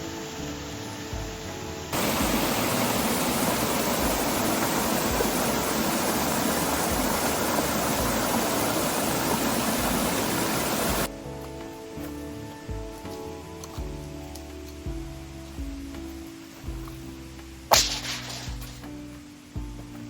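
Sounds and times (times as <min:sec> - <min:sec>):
rushing water: 0:00.1 - 0:11.1, 0:17.7 - 0:18.8.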